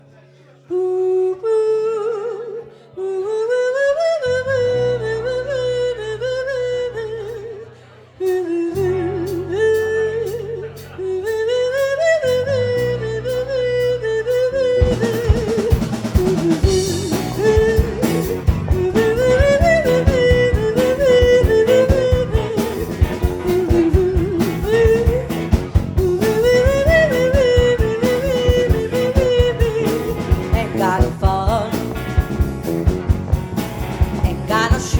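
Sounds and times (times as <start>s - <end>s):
live blues band playing: 8.2s - 34.9s
wavering lead melody: 12.3s - 34.9s
drum kit: 14.4s - 34.9s.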